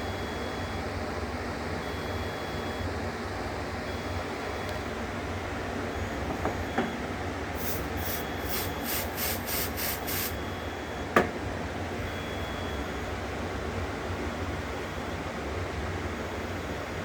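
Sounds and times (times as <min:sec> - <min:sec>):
fan hum: 0:07.4 - 0:11.5
aerosol spray hissing: 0:07.6 - 0:10.4.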